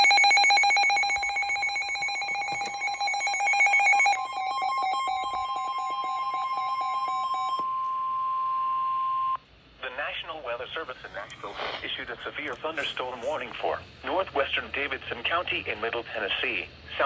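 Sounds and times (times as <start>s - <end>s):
pulsing electronic alarm tone: 0.0s - 9.4s
steady single-pitch alert tone: 0.0s - 9.4s.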